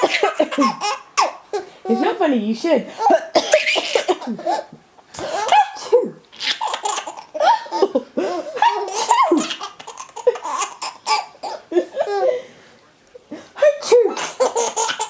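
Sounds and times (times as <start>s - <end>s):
child giggling: 0.0s - 2.2s, 6.5s - 12.4s
fake sneezes and coughs: 3.0s - 4.6s.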